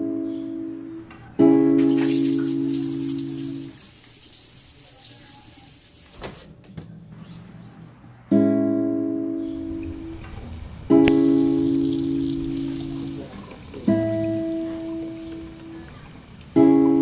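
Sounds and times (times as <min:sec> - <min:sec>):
hiss of running water: 0:01.7 - 0:06.5, 0:11.1 - 0:14.8
acoustic guitar strums: 0:09.4 - 0:15.8.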